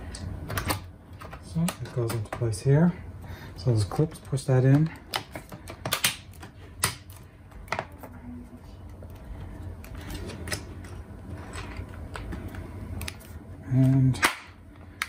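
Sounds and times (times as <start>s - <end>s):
plastic clips snapping: 4.7s - 7.8s.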